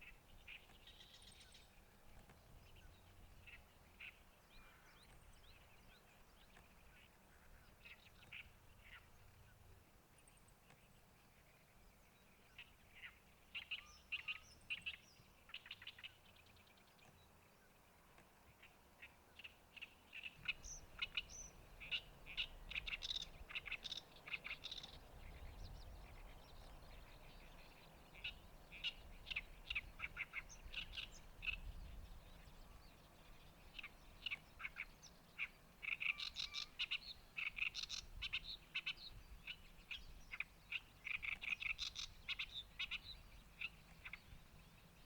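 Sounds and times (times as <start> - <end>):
songbird chattering chirps: 19.4 - 45.0.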